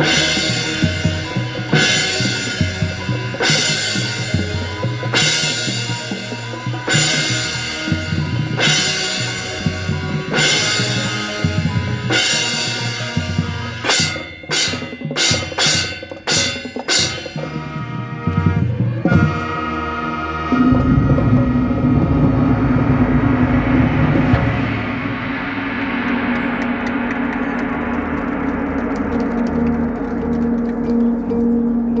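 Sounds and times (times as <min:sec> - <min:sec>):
marching band playing: 0:00.0 - 0:22.8, 0:23.6 - 0:32.0
drum and cymbal accents: 0:00.0 - 0:29.1
deep low tone: 0:18.2 - 0:32.0.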